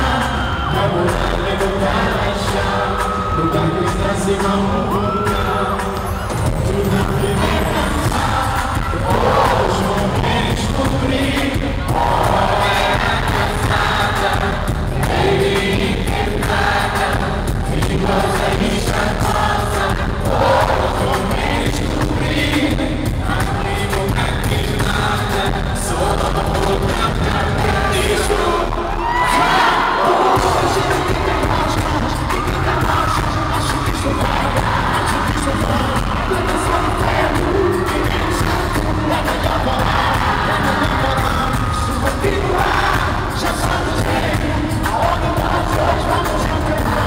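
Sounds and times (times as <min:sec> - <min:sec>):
crowd singing together: 0:00.0 - 0:47.0
audience cheering: 0:28.3 - 0:42.9.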